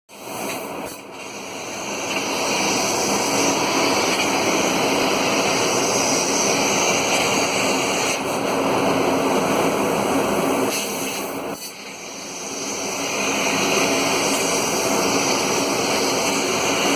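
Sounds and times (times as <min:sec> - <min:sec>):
dehusking machine running: 0:00.3 - 0:10.7.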